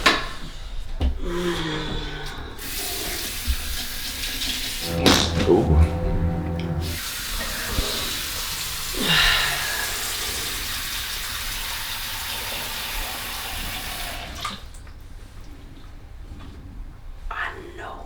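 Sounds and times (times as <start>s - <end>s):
water running from tap: 2.6s - 4.8s, 6.8s - 14.8s
short falling-pitch sound: 4.8s - 7.6s.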